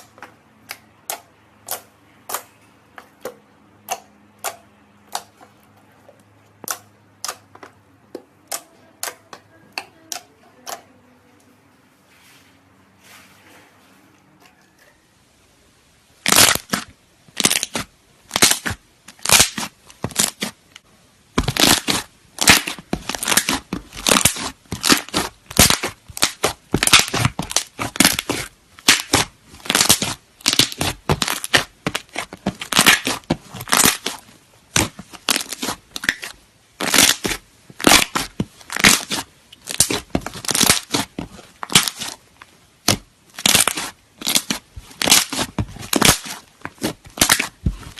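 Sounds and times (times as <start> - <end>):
slime squished by hand: 16.2 - 20.7, 21.3 - 47.9.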